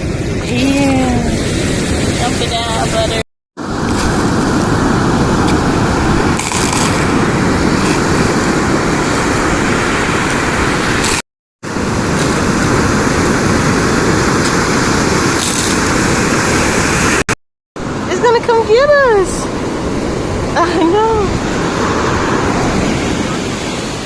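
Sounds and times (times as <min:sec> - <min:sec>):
wind buffeting the microphone: 0:00.0 - 0:17.2
ocean surf roaring: 0:00.0 - 0:24.0.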